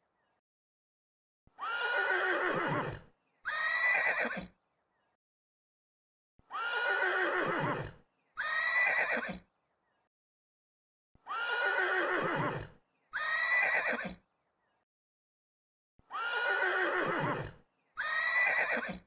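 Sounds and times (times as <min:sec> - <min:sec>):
horse whinnying: 0:01.6 - 0:04.5, 0:06.5 - 0:09.4, 0:11.3 - 0:14.2, 0:16.1 - 0:19.0.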